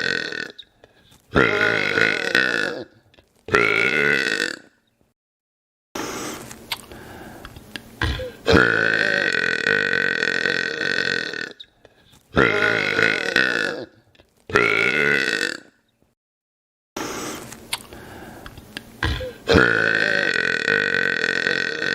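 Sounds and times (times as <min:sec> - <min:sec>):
man burping: 0:00.0 - 0:00.7, 0:01.3 - 0:04.8, 0:08.0 - 0:11.6, 0:12.3 - 0:15.8, 0:19.0 - 0:21.9.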